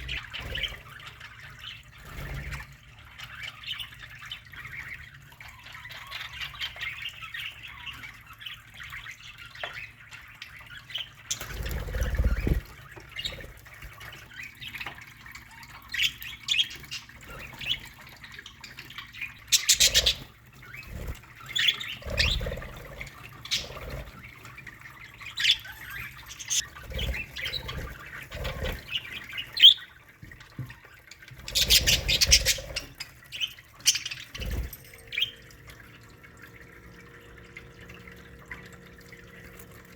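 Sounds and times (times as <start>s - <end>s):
budgerigars chattering and chirping: 0.0s - 30.0s, 31.1s - 35.4s
wings flapping: 11.3s - 14.0s, 33.9s - 35.3s.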